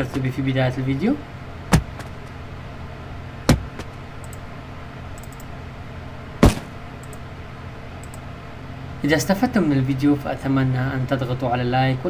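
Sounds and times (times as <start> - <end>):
steady low hum: 0.0 - 12.0
sharp clicks: 3.8 - 4.4, 5.1 - 5.5, 7.0 - 7.2, 8.0 - 8.2.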